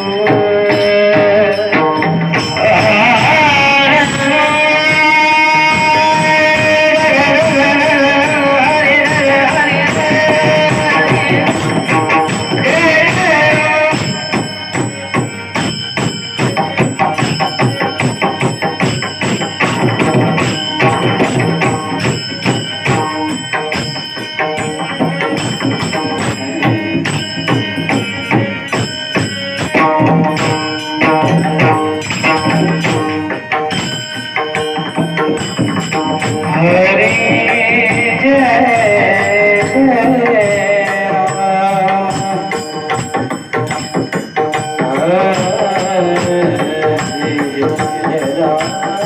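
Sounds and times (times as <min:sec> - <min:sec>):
metallic percussion ringing: 0:00.0 - 0:49.0.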